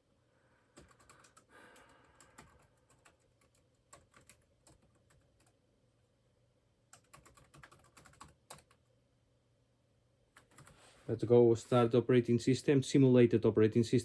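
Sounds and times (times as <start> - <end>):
typing on computer keyboard: 0.8 - 5.6, 6.9 - 8.9, 10.4 - 10.8.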